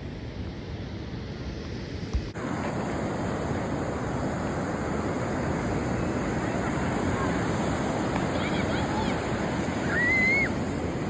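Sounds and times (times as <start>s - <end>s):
ocean surf washing: 2.3s - 11.0s.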